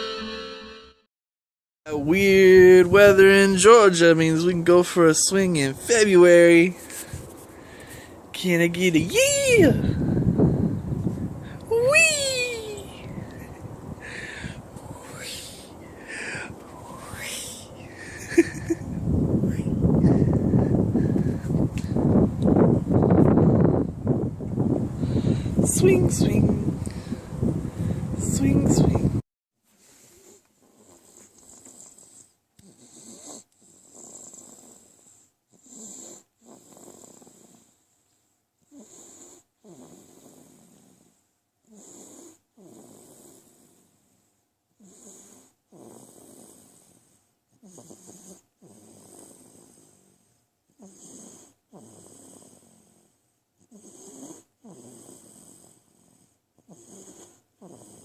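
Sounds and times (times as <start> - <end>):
faint snoring: 29.8 - 58.0.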